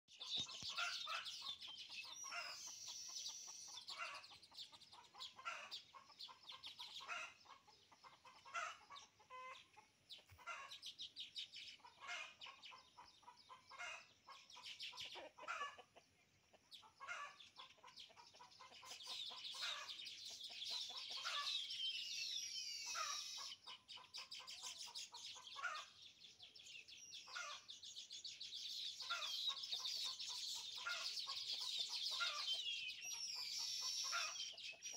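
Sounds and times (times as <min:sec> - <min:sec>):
weaver birds chattering and trilling: 0:00.0 - 0:34.9
short lower bird calls: 0:00.1 - 0:04.3, 0:20.8 - 0:24.8, 0:29.0 - 0:34.9.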